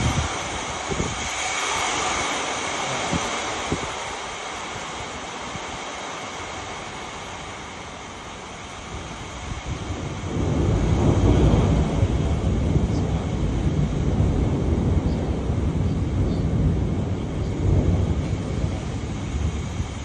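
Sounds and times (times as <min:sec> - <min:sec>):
wind gusting against microphone: 0:00.0 - 0:20.0.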